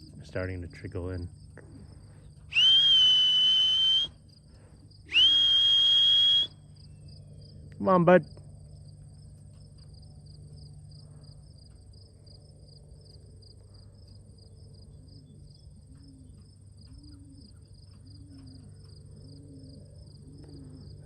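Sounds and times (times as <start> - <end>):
high insect trill: 0.0 - 7.7
crickets chirping: 0.0 - 21.0
pigeon cooing: 14.7 - 21.0.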